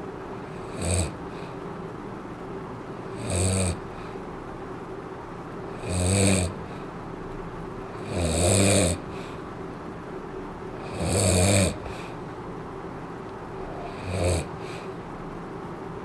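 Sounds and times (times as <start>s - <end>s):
man snoring: 0.4s - 1.5s, 3.1s - 4.2s, 5.7s - 6.8s, 7.9s - 9.3s, 10.8s - 12.2s, 13.6s - 14.9s.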